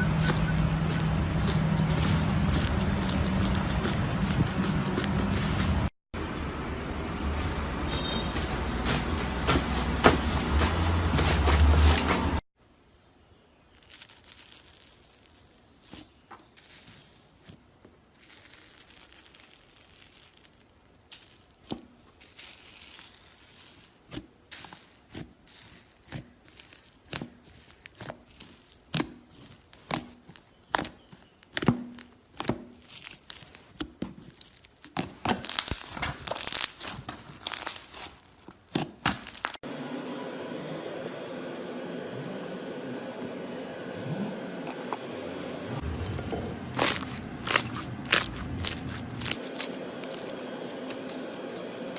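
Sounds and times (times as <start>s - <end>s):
slime popping and crackling: 13.7s - 39.6s, 46.7s - 51.2s.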